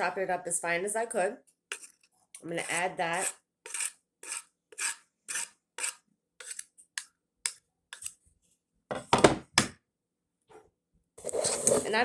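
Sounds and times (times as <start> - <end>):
utensil scraping a board: 11.2 - 12.0.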